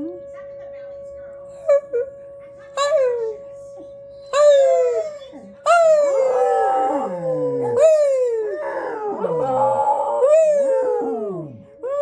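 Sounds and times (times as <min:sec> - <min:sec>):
tornado siren: 0:00.0 - 0:12.0
dogs howling: 0:04.3 - 0:12.0.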